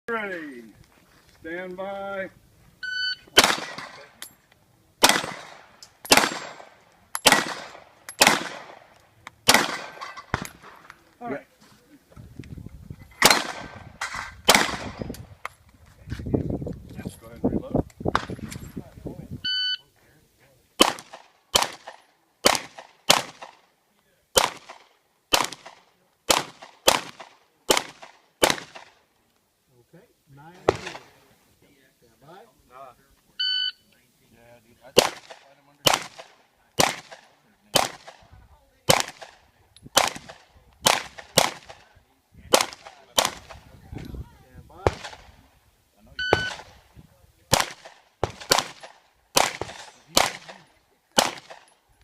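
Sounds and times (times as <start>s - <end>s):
pistol shots echoing: 3.4s - 4.2s, 5.0s - 10.8s, 13.2s - 13.8s, 14.5s - 15.0s, 20.8s - 23.6s, 24.4s - 28.9s, 35.0s - 38.2s, 38.9s - 39.4s, 40.0s - 41.9s, 47.5s - 51.7s.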